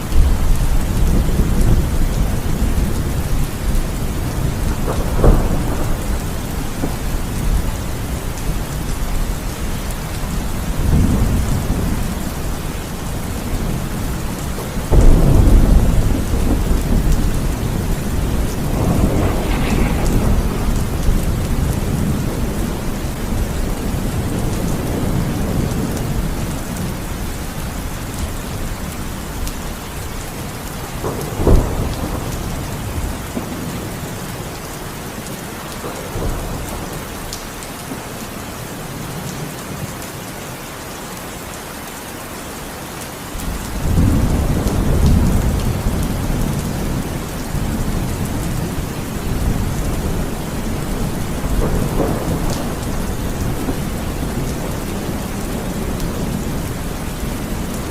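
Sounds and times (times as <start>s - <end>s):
heavy rain: 0.0s - 57.9s
low thunder rumble: 0.1s - 34.5s, 43.4s - 57.9s
thunder clap: 4.1s - 9.2s, 13.1s - 26.5s, 30.9s - 33.9s, 43.4s - 57.9s.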